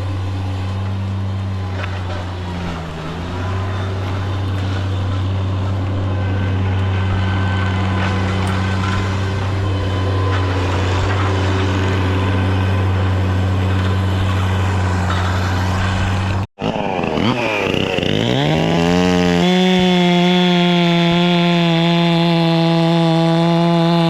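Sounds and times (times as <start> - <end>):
low engine drone: 0.0 - 20.0
chainsaw revving: 0.0 - 24.0.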